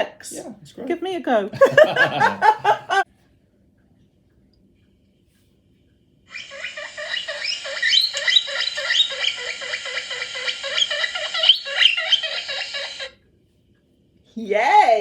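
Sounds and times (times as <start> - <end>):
guinea pig wheeking through small speaker: 6.3 - 13.2.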